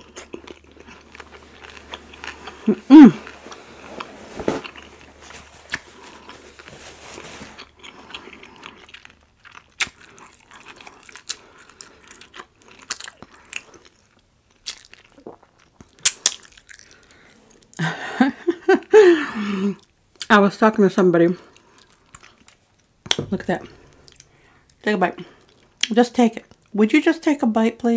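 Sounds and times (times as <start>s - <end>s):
chewing and biting: 0.0s - 6.7s, 7.5s - 17.1s
person speaking: 2.7s - 3.2s, 23.2s - 24.1s.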